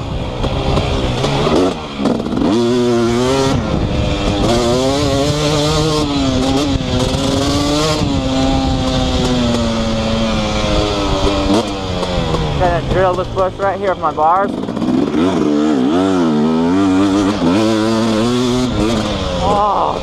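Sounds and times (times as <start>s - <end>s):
dirt bike engine revving: 0.0s - 20.0s.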